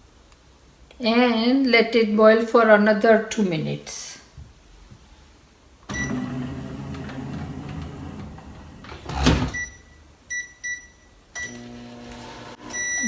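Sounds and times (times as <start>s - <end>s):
microwave oven humming: 5.9s - 9.9s.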